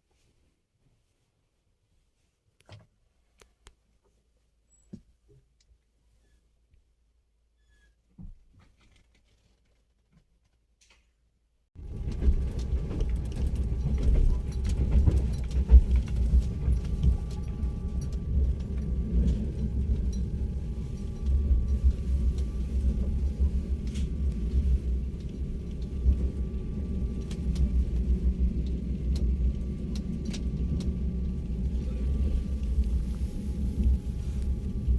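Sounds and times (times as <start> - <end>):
faint steady tones: 11.8 - 34.9
train rumbling: 11.8 - 34.9.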